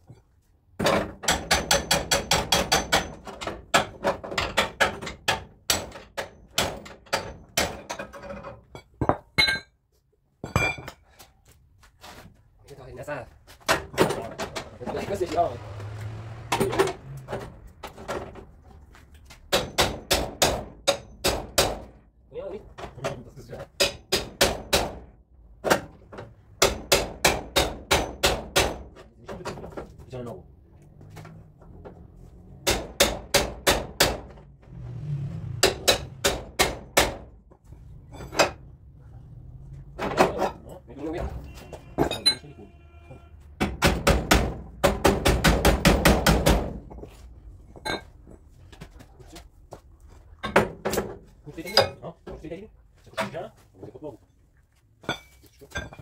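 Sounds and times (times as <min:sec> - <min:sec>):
hammer on sheet metal: 0:01.2 - 0:08.0, 0:19.5 - 0:21.9, 0:23.8 - 0:25.0, 0:26.6 - 0:28.9, 0:32.6 - 0:34.3, 0:35.6 - 0:37.2, 0:43.6 - 0:46.8.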